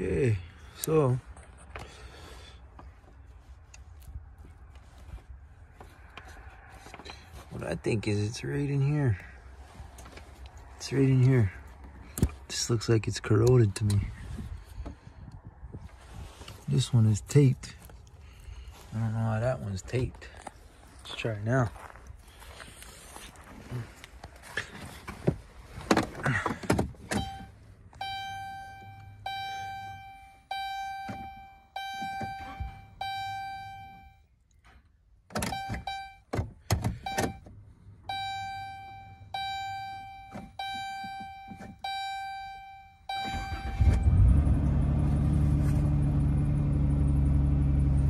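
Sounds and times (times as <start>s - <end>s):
clicks and thunks: 25.0s - 27.4s
car warning chime: 27.1s - 34.3s, 35.4s - 36.3s, 36.9s - 44.5s
engine cranking and idling: 43.1s - 48.0s.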